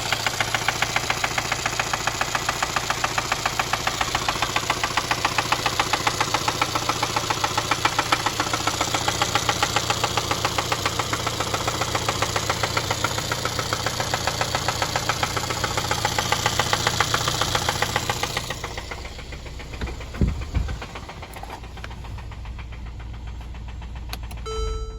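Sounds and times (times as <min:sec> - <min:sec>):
engine knocking at idle: 0:00.0 - 0:24.5
heavy thumps: 0:19.6 - 0:21.6.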